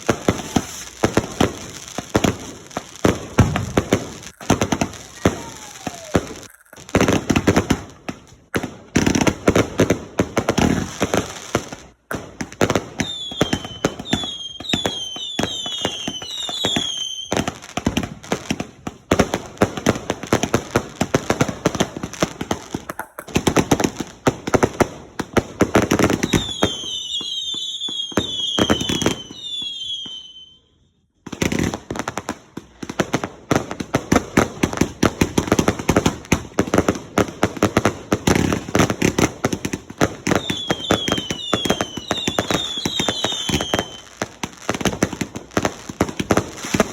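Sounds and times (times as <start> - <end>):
fireworks bangs and crackles: 0.0 - 30.4, 31.2 - 46.9.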